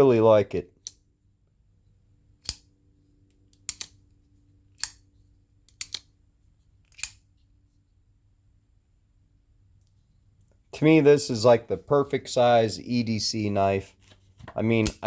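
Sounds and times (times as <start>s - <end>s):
folding knife clicking open and shut: 2.4s - 2.7s, 3.5s - 4.0s, 4.8s - 5.0s, 5.7s - 6.1s, 6.9s - 7.2s.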